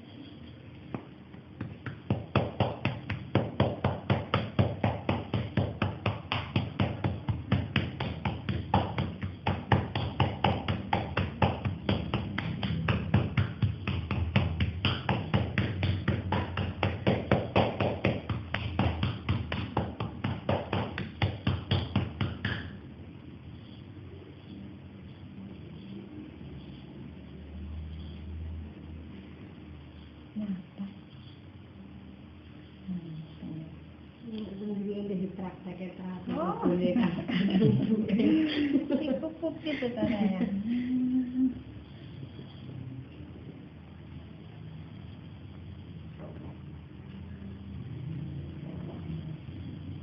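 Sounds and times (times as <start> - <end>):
hand patting a back: 0.9 - 22.8.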